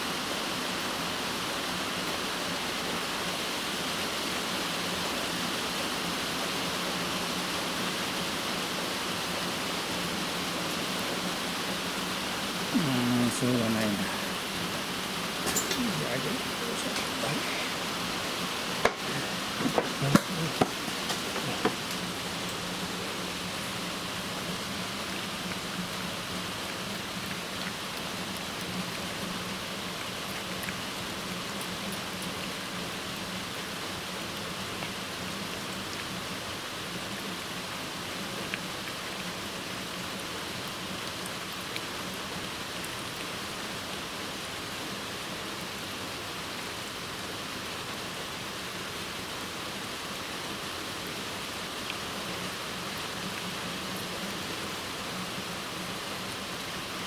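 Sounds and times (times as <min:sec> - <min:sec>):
heavy rain: 0:00.0 - 0:57.0
sharp taps: 0:18.8 - 0:22.0.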